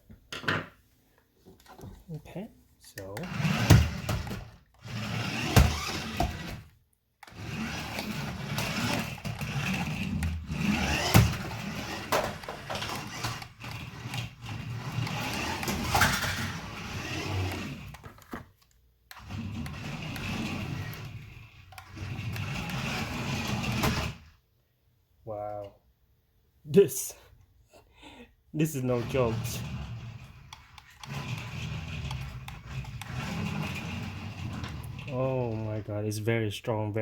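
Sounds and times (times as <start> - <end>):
toy truck motors whirring: 3.0 - 18.1, 19.1 - 24.4, 28.8 - 35.8.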